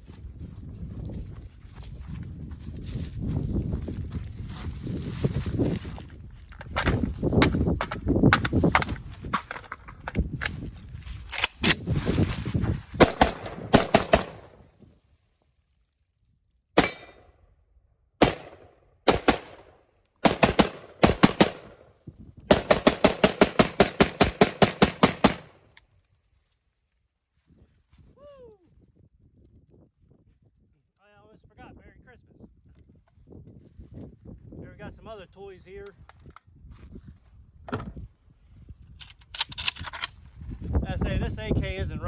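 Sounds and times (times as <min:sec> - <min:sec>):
rifle shots: 0:13.0 - 0:14.7, 0:18.2 - 0:21.9, 0:22.5 - 0:25.6.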